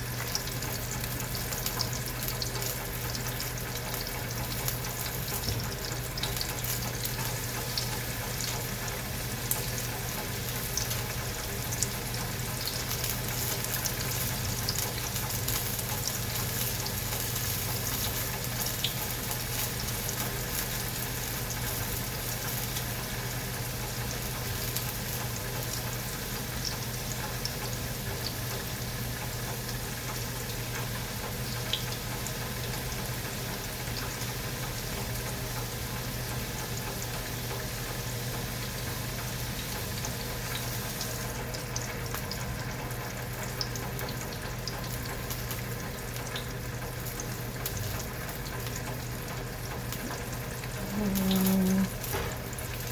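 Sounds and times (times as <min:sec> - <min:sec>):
sausage sizzling in a frying pan: 0:00.0 - 0:52.9
low steady hum: 0:50.6 - 0:52.2.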